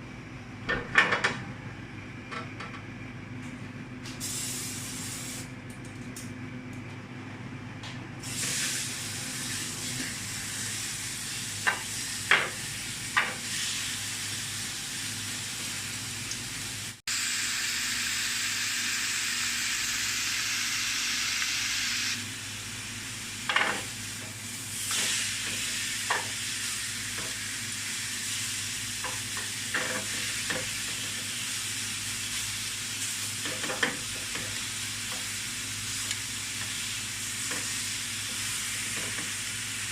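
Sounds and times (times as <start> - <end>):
beef sizzling in pan: 23.7 - 39.9.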